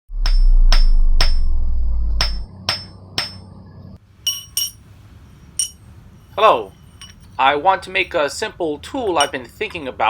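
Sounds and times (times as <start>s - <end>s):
low hum: 0.1s - 7.4s
hammer ringing on anvil: 2.2s - 3.5s, 4.3s - 4.8s, 5.6s - 7.3s
light metallic clinks: 4.3s - 7.4s, 9.1s - 9.6s.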